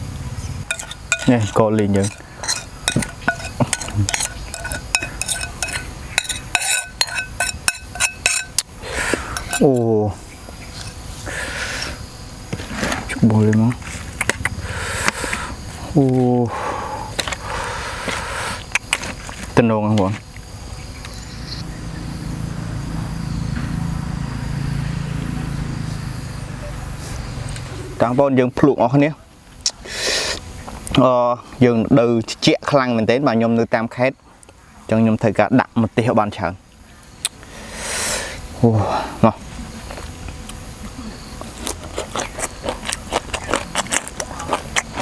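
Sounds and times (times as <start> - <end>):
utensil clinking against dish: 0.7 - 9.8
low engine drone: 21.0 - 28.2.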